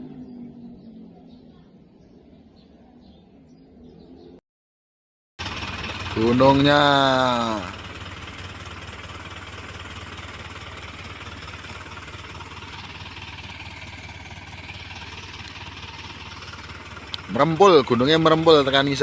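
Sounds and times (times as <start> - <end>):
man speaking: 6.2 - 7.8, 17.3 - 19.0.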